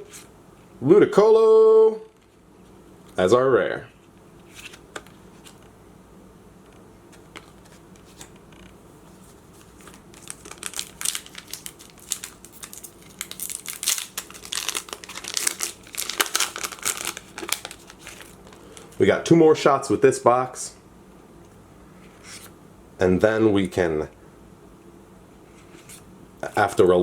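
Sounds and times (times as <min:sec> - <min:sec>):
foil wrapper crinkling and tearing: 0:09.6 - 0:19.0.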